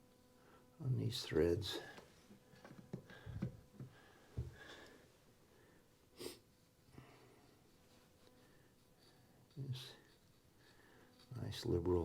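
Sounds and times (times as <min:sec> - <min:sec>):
soft handling bumps: 0:01.9 - 0:04.6
person sniffing: 0:06.1 - 0:07.8.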